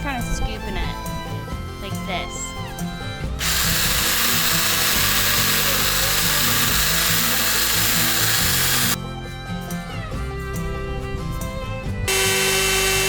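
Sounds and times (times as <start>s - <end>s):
background music: 0.0s - 13.0s
chainsaw cutting pumpkin: 3.4s - 9.0s, 12.1s - 13.0s.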